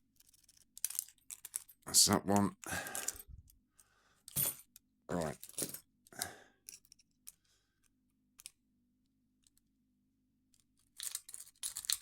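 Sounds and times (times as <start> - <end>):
rake pick rattling in padlock: 11.0 - 12.0.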